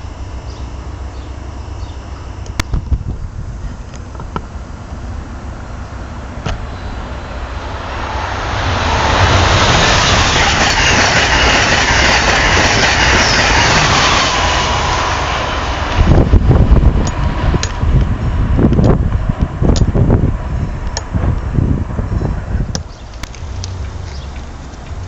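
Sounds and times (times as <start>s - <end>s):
passenger train passing: 0.0s - 25.0s
train wheels clattering: 8.0s - 16.2s.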